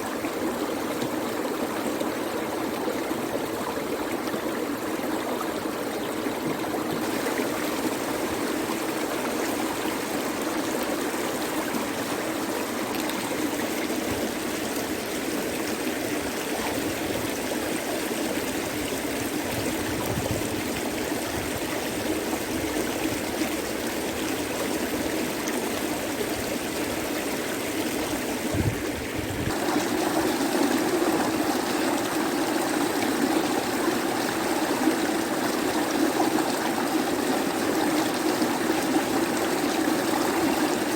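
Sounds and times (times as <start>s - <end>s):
river water rushing: 0.0s - 19.6s, 20.5s - 40.9s.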